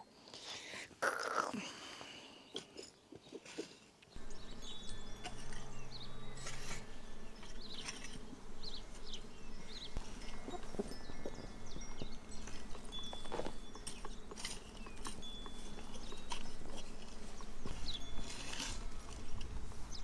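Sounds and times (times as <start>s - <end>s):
low steady hum: 4.2s - 20.0s.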